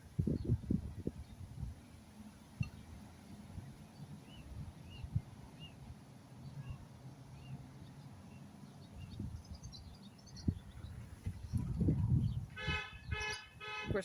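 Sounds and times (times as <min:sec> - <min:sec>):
bird chirping: 0:06.4 - 0:13.6.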